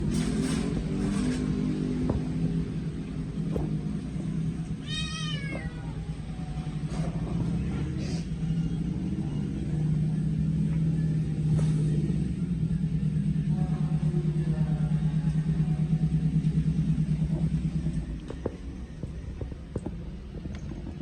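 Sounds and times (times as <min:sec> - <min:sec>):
steady low hum: 0:00.0 - 0:21.0
kitten meowing: 0:04.8 - 0:06.0.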